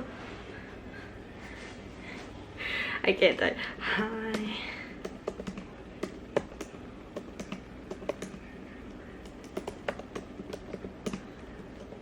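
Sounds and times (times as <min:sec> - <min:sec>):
keyboard key clicks: 0:05.0 - 0:08.4, 0:09.2 - 0:12.0.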